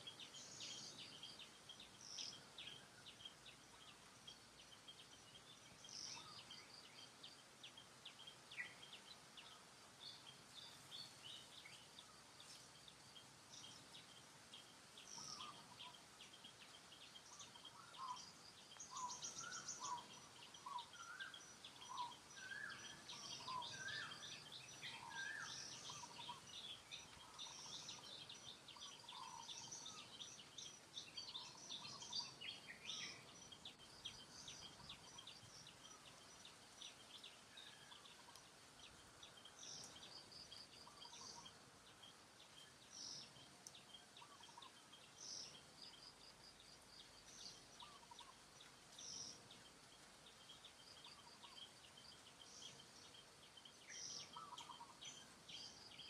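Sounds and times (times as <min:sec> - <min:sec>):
low background hiss: 0:00.0 - 0:56.0
bird chirps and calls: 0:13.6 - 0:38.4, 0:39.2 - 0:46.0, 0:50.3 - 0:56.0.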